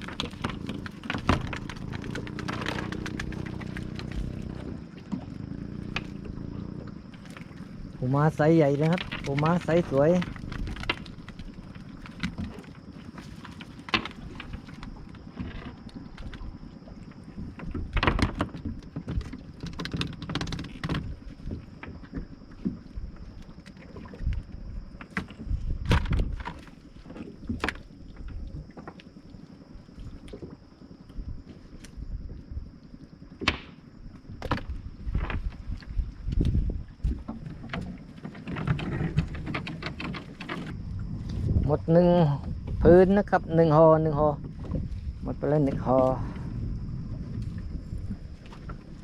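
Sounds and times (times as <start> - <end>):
knocks and clatter of net hauling: 0.0 - 6.2, 7.2 - 16.4, 17.4 - 22.8, 36.4 - 41.7
low steady rumble: 0.0 - 18.0, 21.0 - 39.6, 40.3 - 49.0.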